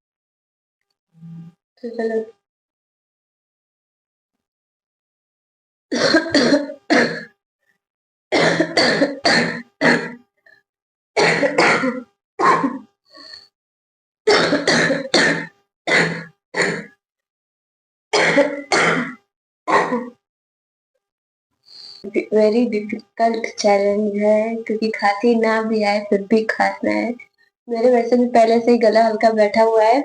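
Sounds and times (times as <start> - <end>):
woman coughing: 5.9 - 7.3, 8.4 - 10.2, 11.2 - 12.9, 14.3 - 16.9, 18.2 - 20.2.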